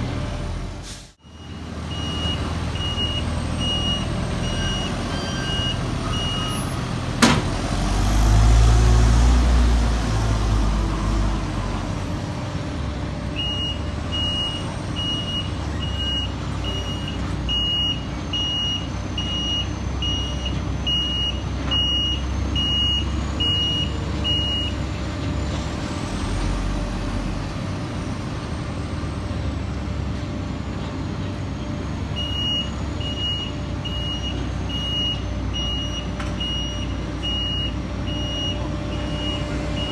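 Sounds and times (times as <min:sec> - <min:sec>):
diesel engine rumble: 0:00.0 - 0:39.9
reversing alarm beeping: 0:01.2 - 0:07.4, 0:13.4 - 0:24.9, 0:32.1 - 0:39.9.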